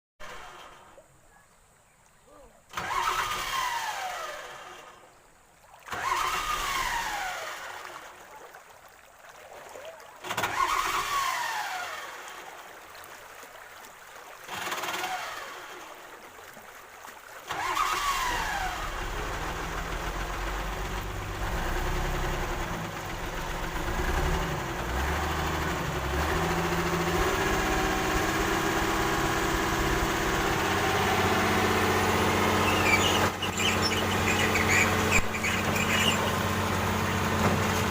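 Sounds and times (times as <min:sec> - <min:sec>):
engine cranking and running: 0:00.2 - 0:01.0, 0:02.7 - 0:05.0, 0:05.9 - 0:08.0, 0:10.2 - 0:12.6, 0:14.5 - 0:16.0, 0:17.5 - 0:37.9.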